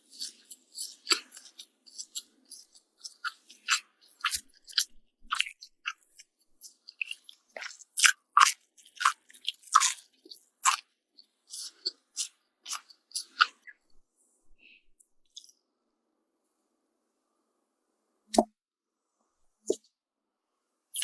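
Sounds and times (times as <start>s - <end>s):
person chewing crunchy food: 0.0s - 13.8s, 15.0s - 15.5s.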